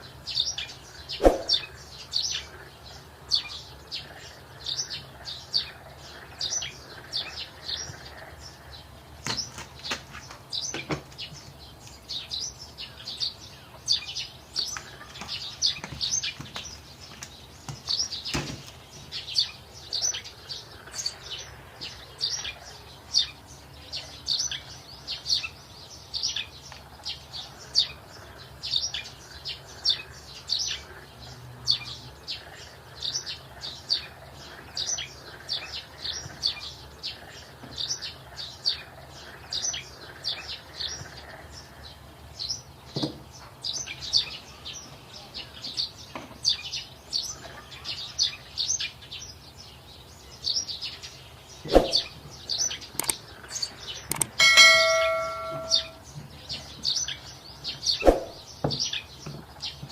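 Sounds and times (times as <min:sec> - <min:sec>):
small bird chirping: 0:00.0 - 0:09.6, 0:43.4 - 0:59.8
sharp knock: 0:01.2 - 0:01.6.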